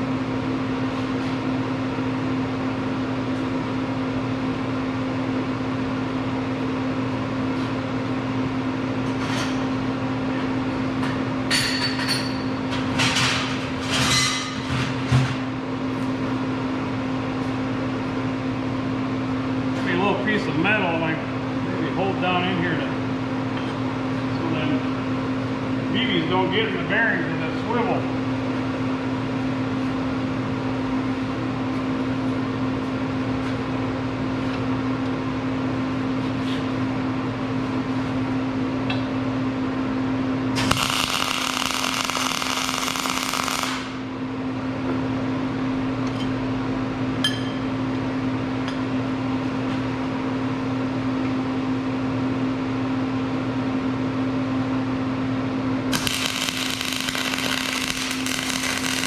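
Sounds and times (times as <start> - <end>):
steady hum: 15.4 - 59.0
crackling welding arc: 40.6 - 44.1, 55.9 - 59.0.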